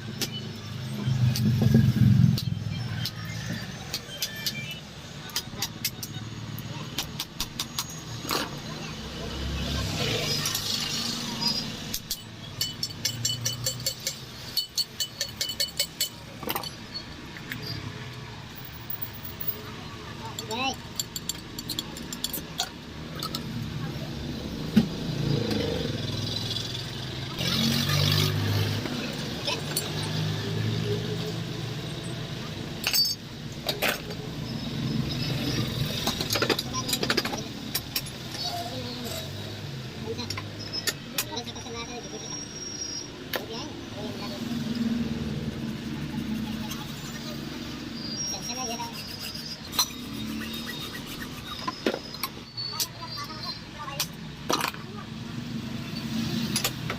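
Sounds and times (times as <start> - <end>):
metal-on-metal clinks: 12.0 - 17.8, 20.3 - 23.4, 32.8 - 33.3.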